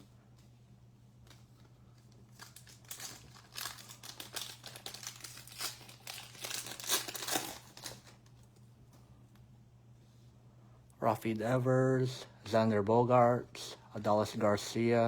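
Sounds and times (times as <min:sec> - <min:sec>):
plastic wrapper crinkling: 0:02.0 - 0:08.4.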